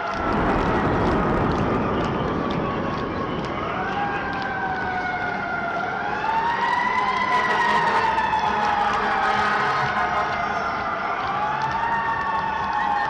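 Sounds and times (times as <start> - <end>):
city street noise: 0.0 - 13.0
emergency vehicle siren wailing: 0.0 - 13.0.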